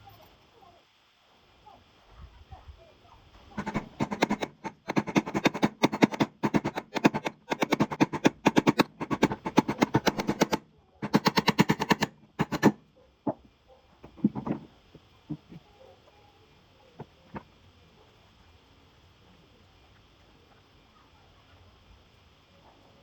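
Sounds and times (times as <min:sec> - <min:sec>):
impact wrench rattling: 0:03.6 - 0:13.4
metal parts knocking: 0:03.6 - 0:14.7.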